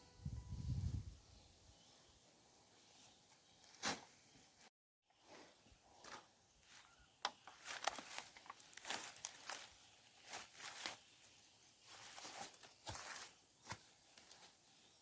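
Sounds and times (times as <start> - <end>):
leaves rustling and crackling: 6.0 - 15.0.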